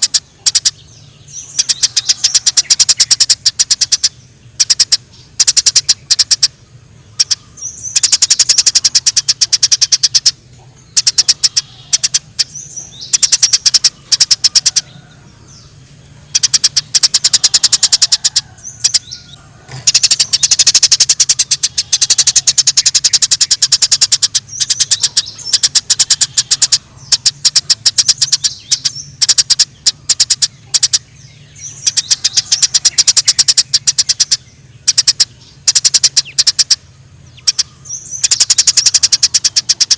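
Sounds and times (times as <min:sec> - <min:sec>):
sparrows chattering: 0:00.0 - 0:39.9.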